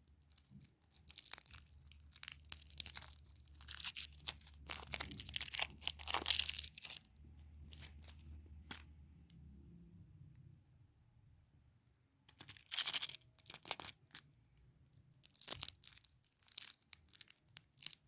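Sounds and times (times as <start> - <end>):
plastic packaging crinkling: 0.2 - 8.8, 12.3 - 14.2, 15.2 - 18.0.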